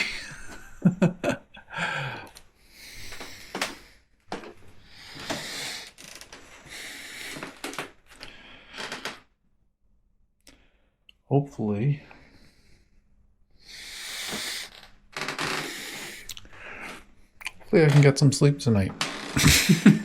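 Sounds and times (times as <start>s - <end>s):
person breathing: 0.0s - 0.6s, 1.6s - 4.1s, 4.7s - 6.0s, 6.6s - 9.2s, 10.4s - 11.0s, 12.0s - 13.0s, 13.6s - 14.8s, 15.6s - 17.4s.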